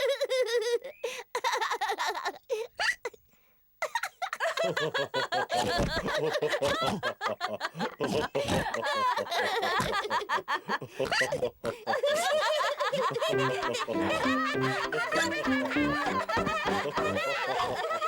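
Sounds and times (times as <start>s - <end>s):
cartoon voices laughing: 5.4s - 10.4s, 11.1s - 18.0s.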